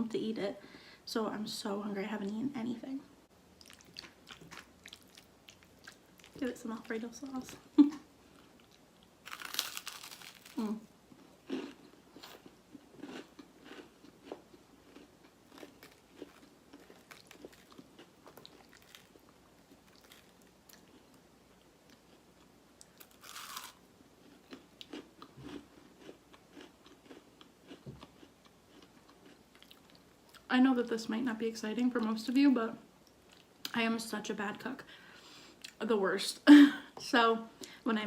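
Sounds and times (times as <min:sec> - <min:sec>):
wet chewing: 0:03.6 - 0:06.4
crunching of crispy toast: 0:08.6 - 0:21.0, 0:22.9 - 0:30.0.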